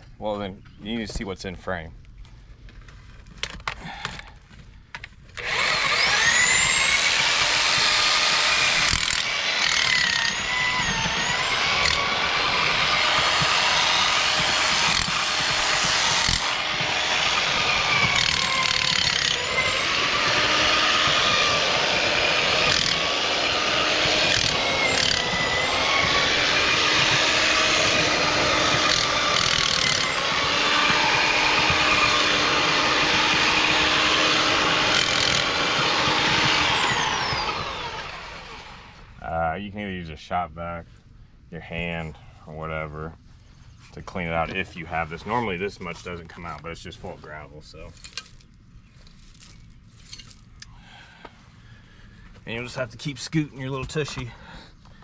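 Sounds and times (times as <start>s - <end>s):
electric drill boring through soil: 3.3s - 39.2s.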